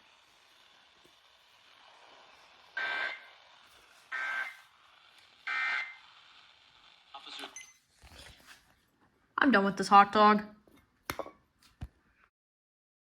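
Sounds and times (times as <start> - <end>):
digital data tone bursts: 2.8 - 3.2, 4.1 - 4.6, 5.4 - 6.0.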